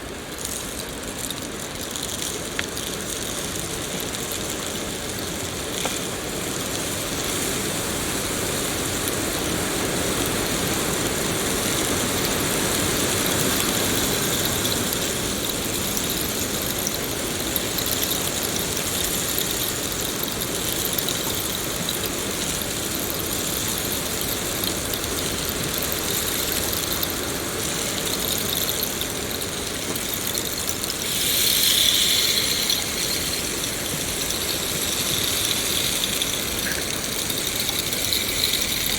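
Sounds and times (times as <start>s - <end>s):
steady rain in forest: 0.0s - 38.9s
faint high steady tones: 12.0s - 38.9s.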